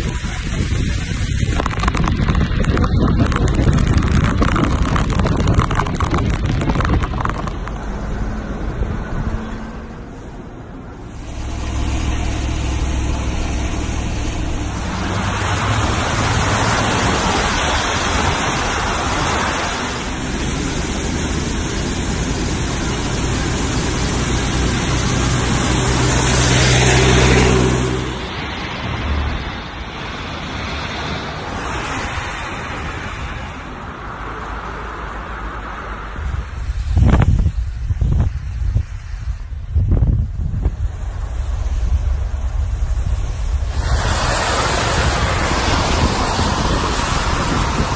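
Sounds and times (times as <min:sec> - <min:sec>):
vehicle engine running: 0:00.0 - 0:09.4, 0:10.2 - 0:28.6.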